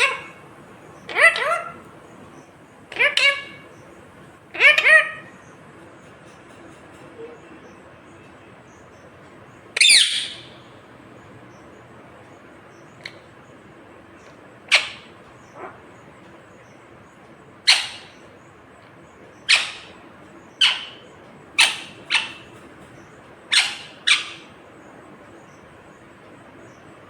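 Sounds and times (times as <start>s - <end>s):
parakeet squawking: 0.0s - 2.0s, 2.9s - 3.9s, 4.5s - 5.3s, 9.8s - 10.6s, 14.7s - 15.9s, 17.6s - 18.3s, 19.3s - 24.6s.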